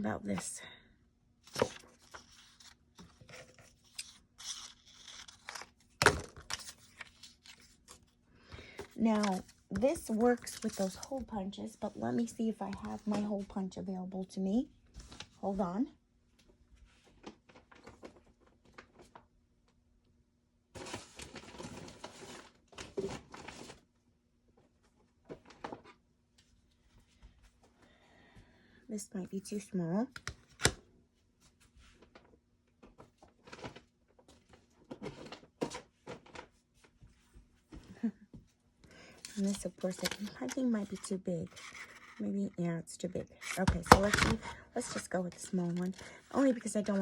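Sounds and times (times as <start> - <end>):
paper rustling and crinkling: 1.5 - 11.3, 20.8 - 23.9, 39.1 - 42.2, 43.4 - 47.0.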